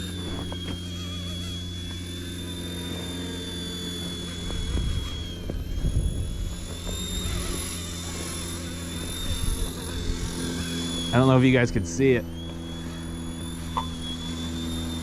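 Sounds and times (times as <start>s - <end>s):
electric motor whine: 0.0s - 15.0s
rotor buzz: 0.0s - 15.0s.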